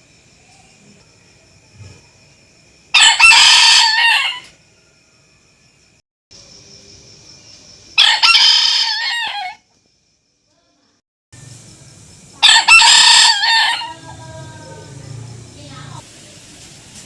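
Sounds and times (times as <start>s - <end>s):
rooster crowing: 2.9s - 5.1s, 8.0s - 9.7s, 12.4s - 15.6s.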